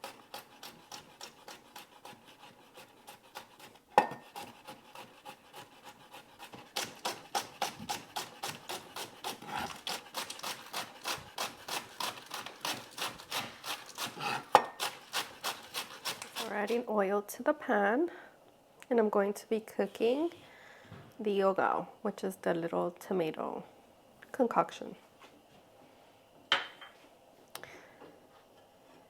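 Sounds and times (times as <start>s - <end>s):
knife chopping on cutting board: 3.0s - 16.8s.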